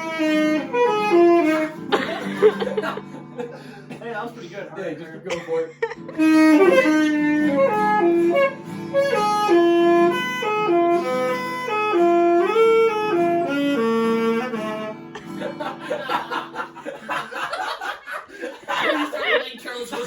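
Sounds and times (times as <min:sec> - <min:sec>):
saxophone held notes: 0:00.0 - 0:02.3, 0:06.1 - 0:15.4.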